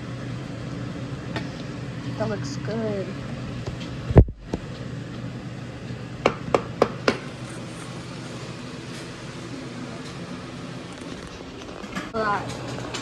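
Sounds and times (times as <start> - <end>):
steady low hum: 0.0 - 13.0
utensil knocking on cookware: 6.2 - 7.4.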